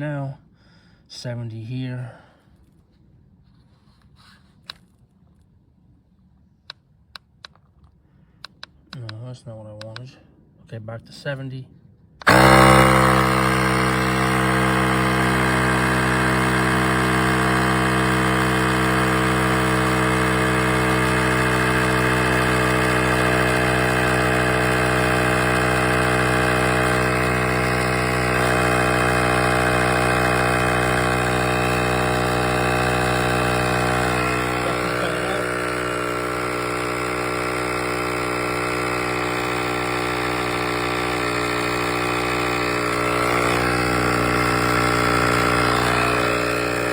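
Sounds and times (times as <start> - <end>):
tire inflator motor hum: 12.2 - 46.9.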